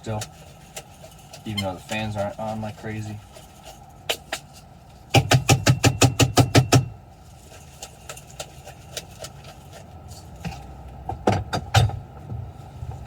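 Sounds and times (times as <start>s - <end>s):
light ticks and handling sounds: 0.0s - 5.1s, 7.1s - 11.0s
knife chopping food: 5.2s - 6.9s.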